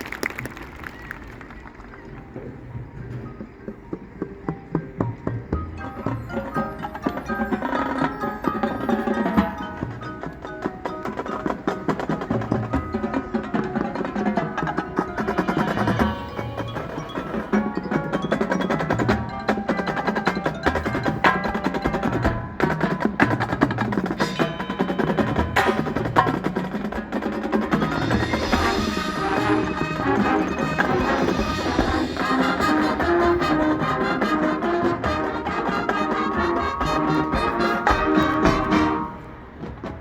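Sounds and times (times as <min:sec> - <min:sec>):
marimba and bells ringing: 0:02.0 - 0:39.6
quick drum and wood-block strokes: 0:02.2 - 0:40.0.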